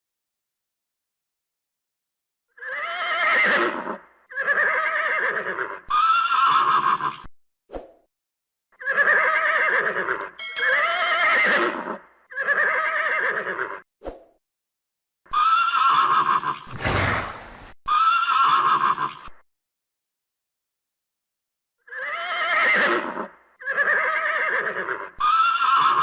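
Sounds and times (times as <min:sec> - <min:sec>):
horse whinnying: 0:02.6 - 0:07.3, 0:08.8 - 0:10.2, 0:10.9 - 0:13.8, 0:15.3 - 0:16.7, 0:17.9 - 0:19.4, 0:21.8 - 0:26.0.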